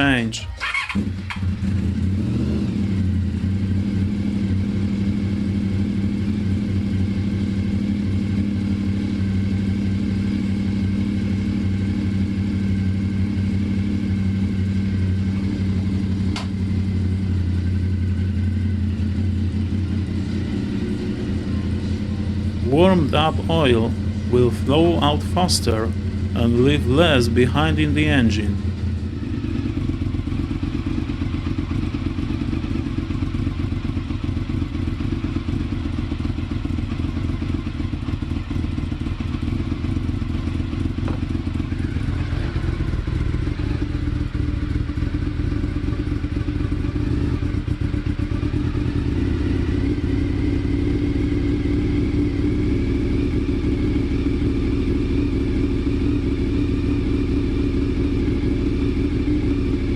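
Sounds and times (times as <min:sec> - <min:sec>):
motorcycle engine idling: 0:23.9 - 0:24.3, 0:25.9 - 0:26.4, 0:28.6 - 0:59.9.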